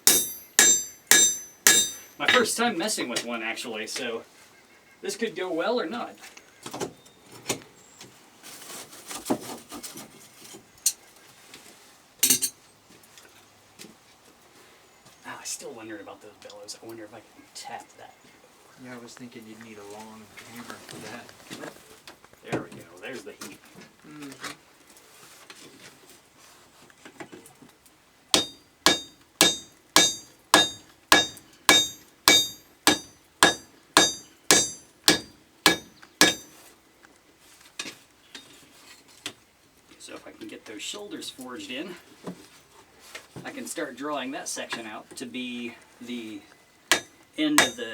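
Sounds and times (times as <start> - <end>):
hammer ringing on anvil: 0.0 - 2.5, 28.4 - 36.5, 46.9 - 47.9
metal tools clinking and clanking: 0.0 - 2.6, 12.2 - 12.6, 28.4 - 36.5.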